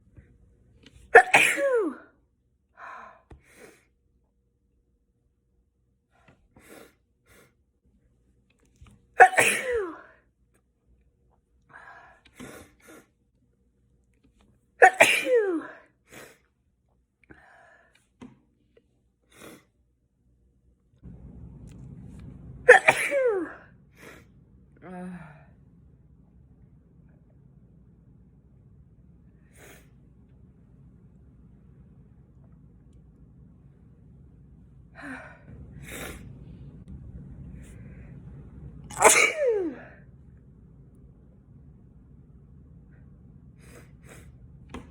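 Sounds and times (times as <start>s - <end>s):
person sneezing: 1.1s - 2.1s, 9.2s - 10.1s, 14.8s - 16.4s, 22.7s - 24.2s, 38.9s - 40.0s.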